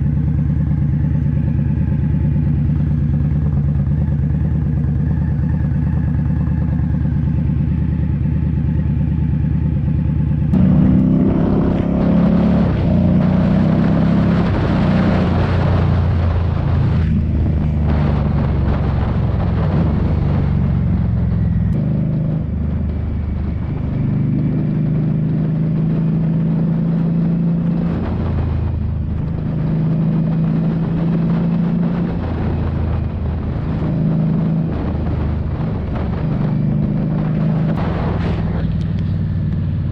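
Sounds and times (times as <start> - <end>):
motorcycle engine running: 0.0 - 39.9
wind rushing over microphone: 10.5 - 39.9.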